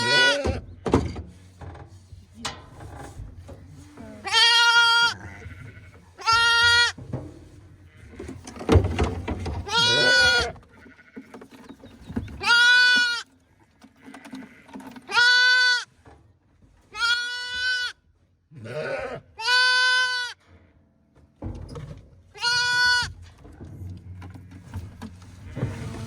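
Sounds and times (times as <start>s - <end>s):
sheep bleating: 0.0s - 0.6s, 4.2s - 7.0s, 9.7s - 11.2s, 14.0s - 15.9s, 17.0s - 20.4s.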